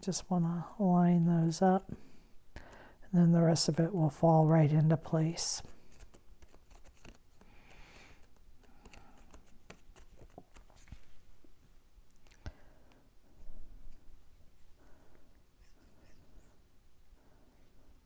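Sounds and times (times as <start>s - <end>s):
cardstock rustling and tapping: 5.7s - 11.1s.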